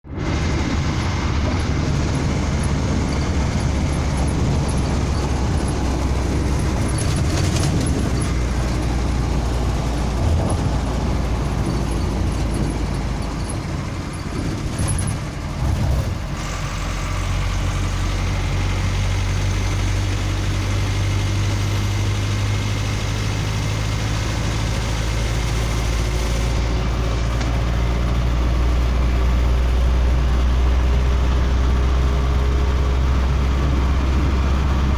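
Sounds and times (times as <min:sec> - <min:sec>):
diesel truck engine running: 0:00.0 - 0:34.9.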